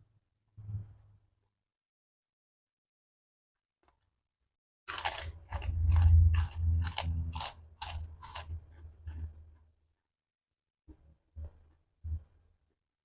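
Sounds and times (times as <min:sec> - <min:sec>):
crunchy chewing: 0:04.9 - 0:09.3.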